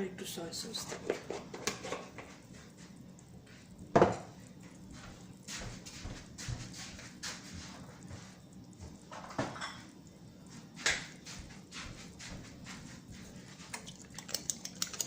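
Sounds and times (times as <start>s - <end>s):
steady low hum: 0.1s - 15.0s
kitchen utensils clinking: 9.1s - 9.9s, 13.8s - 15.0s.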